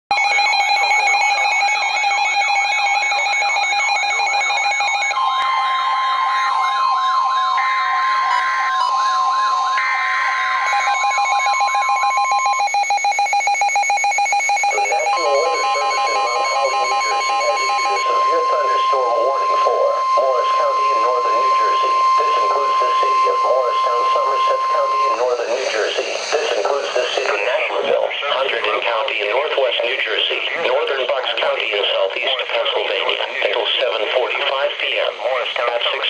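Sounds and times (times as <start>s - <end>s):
electronic beeps: 0.1s - 28.4s
steady alarm tones: 0.1s - 35.2s
warbling siren: 0.3s - 27.8s.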